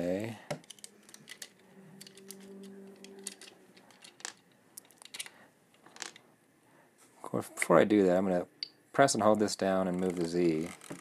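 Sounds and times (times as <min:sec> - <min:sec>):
faint steady hum: 0:00.0 - 0:11.0
plastic parts clicking and tapping: 0:00.5 - 0:06.2, 0:10.0 - 0:11.0.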